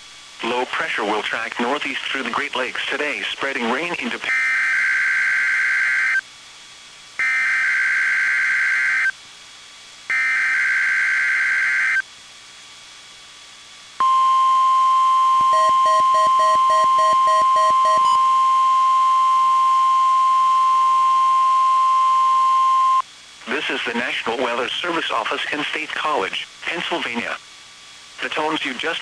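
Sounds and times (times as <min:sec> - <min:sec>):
steady single-pitch alert tone: 0:14.0 - 0:23.0
warbling data screech: 0:15.5 - 0:23.0.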